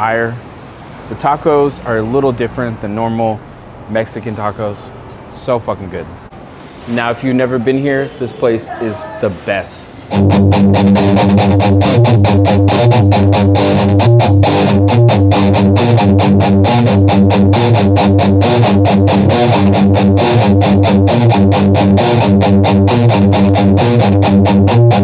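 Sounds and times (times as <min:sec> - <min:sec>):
fast picked electric guitar: 0:10.1 - 0:25.0
low bass notes: 0:10.1 - 0:25.0.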